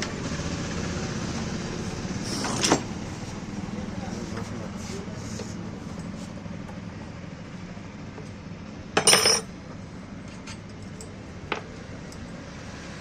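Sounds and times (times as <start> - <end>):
metal tools clattering: 9.0 - 9.5.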